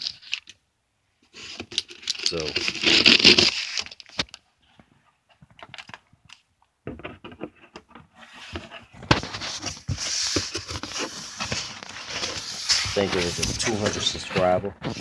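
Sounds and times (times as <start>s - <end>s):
packaging crinkling and rustling: 1.5s - 4.4s, 5.5s - 6.4s, 8.5s - 15.0s
small clicks and knocks: 3.8s - 8.1s.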